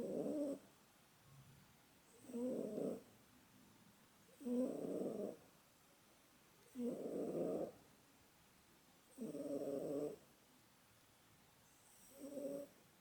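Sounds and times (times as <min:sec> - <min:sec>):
cat snoring: 0:00.0 - 0:00.6, 0:02.1 - 0:03.1, 0:04.3 - 0:05.4, 0:06.7 - 0:07.8, 0:09.1 - 0:10.2, 0:11.8 - 0:12.8.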